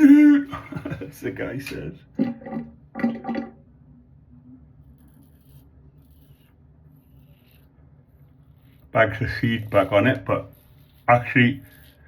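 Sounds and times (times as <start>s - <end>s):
razor scraping stubble: 4.8s - 12.0s.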